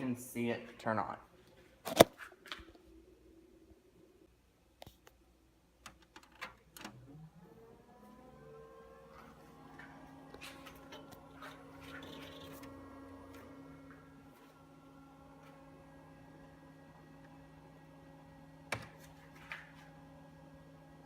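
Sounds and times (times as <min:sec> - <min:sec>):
computer fans spinning up: 0:05.8 - 0:21.0
cables plugging in clicks: 0:18.7 - 0:19.8.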